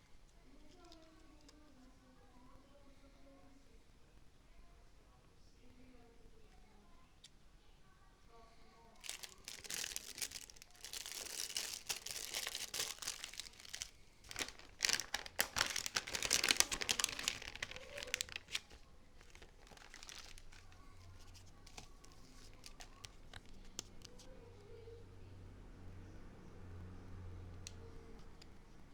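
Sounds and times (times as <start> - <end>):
packaging crinkling and tearing: 9.0 - 24.2.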